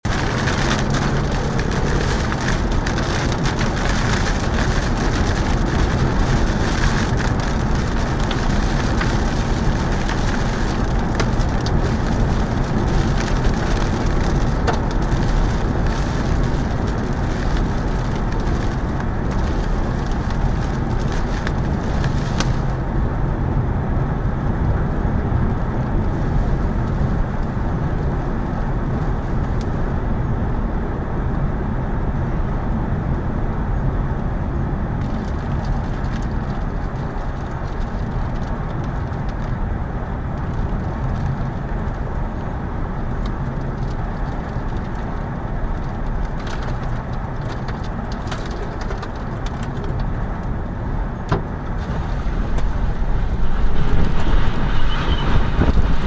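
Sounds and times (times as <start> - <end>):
heavy rain: 0.0 - 23.8, 34.9 - 56.0
deep steady rumble: 0.0 - 56.0.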